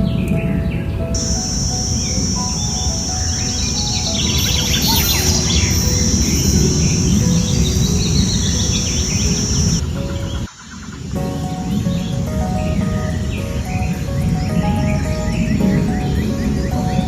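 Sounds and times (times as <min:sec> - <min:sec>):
high-pitched insect drone: 0:01.2 - 0:09.8
birds chirping and calling: 0:01.2 - 0:10.5.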